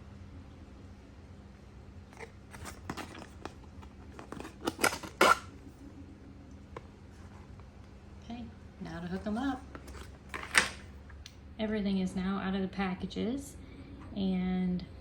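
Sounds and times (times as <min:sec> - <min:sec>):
packaging clicks snaps and crinkles: 0:02.2 - 0:05.5.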